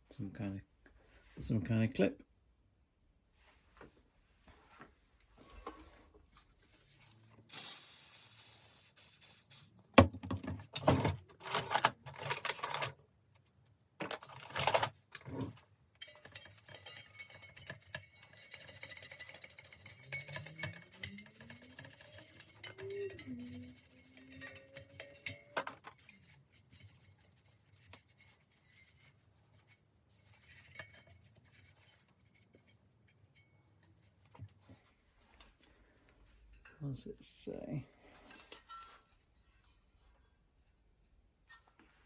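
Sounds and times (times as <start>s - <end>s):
rubbing and handling noise: 3.3s - 36.8s, 38.0s - 42.0s
metal parts knocking and clinking: 10.2s - 13.0s, 14.0s - 27.0s.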